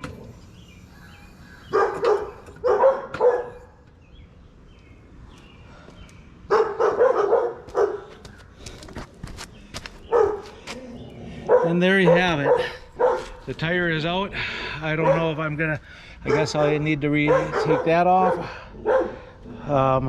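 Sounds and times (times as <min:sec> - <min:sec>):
dog barking: 0:01.7 - 0:03.6, 0:06.5 - 0:08.1, 0:10.1 - 0:10.6, 0:11.4 - 0:13.4, 0:15.0 - 0:15.4, 0:16.2 - 0:19.3.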